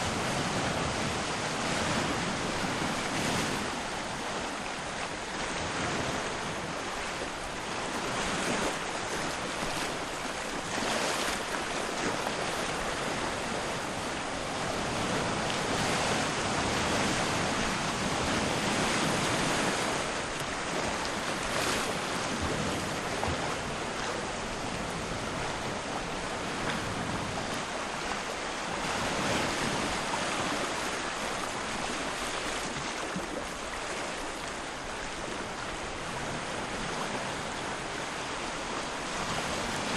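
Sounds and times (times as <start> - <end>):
sea waves washing onto shore: 0.0 - 39.9.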